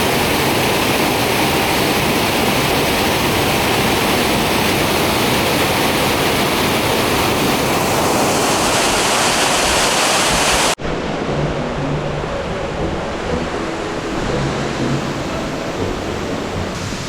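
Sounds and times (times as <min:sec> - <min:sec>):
waterfall roaring: 0:00.0 - 0:10.8, 0:11.6 - 0:17.0.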